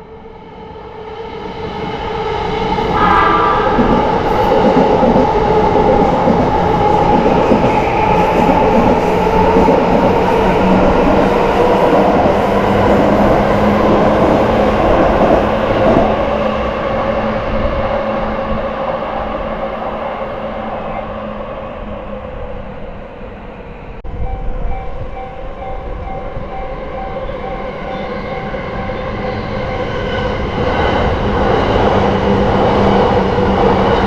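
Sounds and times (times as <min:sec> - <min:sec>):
electric train passing: 0:00.2 - 0:34.0.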